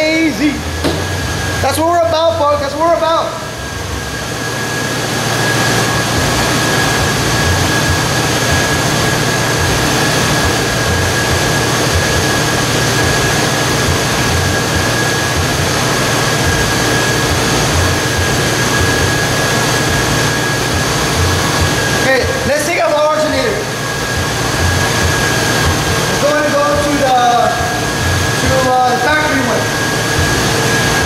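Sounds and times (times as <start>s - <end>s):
alternator whine: 0.0s - 31.0s
car engine idling: 5.8s - 21.9s.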